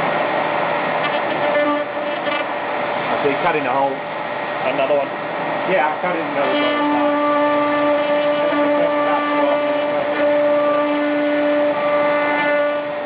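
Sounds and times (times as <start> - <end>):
router spindle whining: 5.8 - 13.0.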